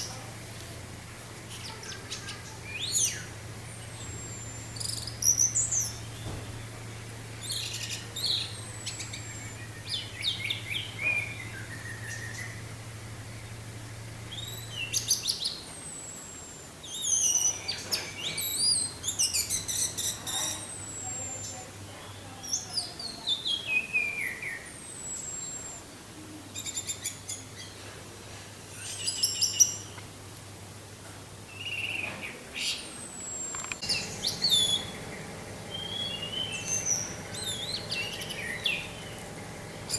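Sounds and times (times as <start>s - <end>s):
faint low hum: 33.0s - 39.9s
thrush singing: 33.6s - 39.9s.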